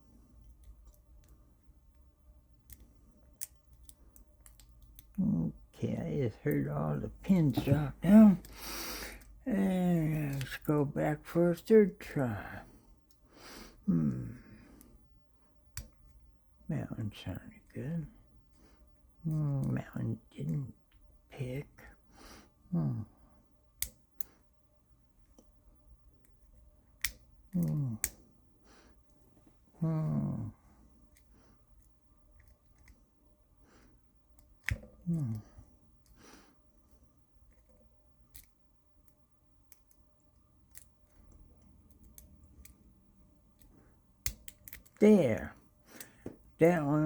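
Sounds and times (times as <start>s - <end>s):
lock pick metallic clicks: 43.6s - 45.0s.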